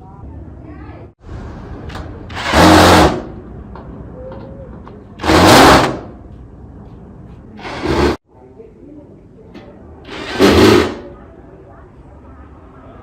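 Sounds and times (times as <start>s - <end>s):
loud machine noise bursts: 2.3s - 3.4s, 5.2s - 6.1s, 7.6s - 8.2s, 10.1s - 11.1s.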